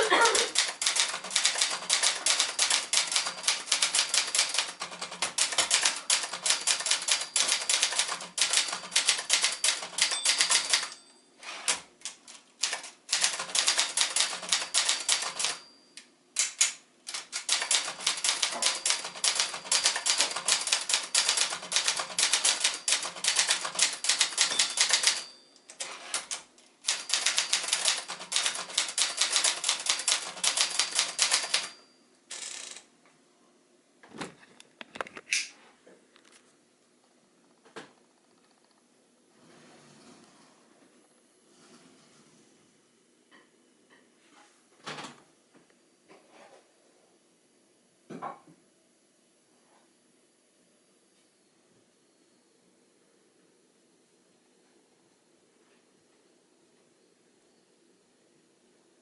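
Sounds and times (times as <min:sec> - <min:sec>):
typewriter keys clacking: 0:00.2 - 0:11.0, 0:11.6 - 0:15.6, 0:16.4 - 0:32.8.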